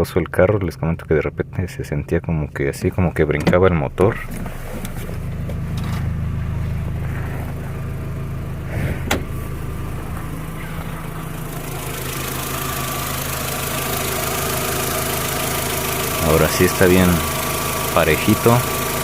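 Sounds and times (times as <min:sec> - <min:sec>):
car engine idling: 0:00.0 - 0:19.0.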